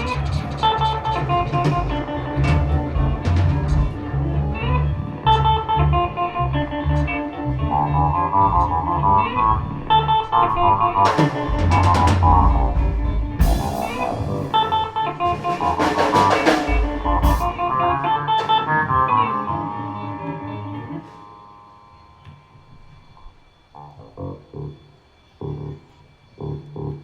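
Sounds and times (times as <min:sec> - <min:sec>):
drum kit playing: 0:00.0 - 0:04.6, 0:11.0 - 0:19.1
electric guitar playing: 0:00.0 - 0:22.9
guitar chord ringing out: 0:01.0 - 0:22.7
cymbal crashes: 0:11.1 - 0:17.7.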